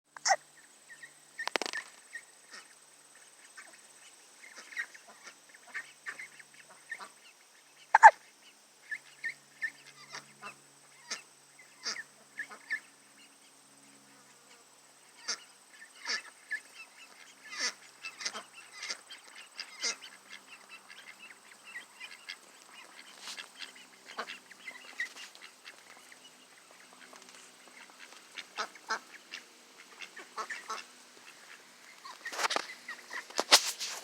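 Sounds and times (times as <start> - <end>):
ducks calling: 3.4 - 13.3, 15.2 - 34.0.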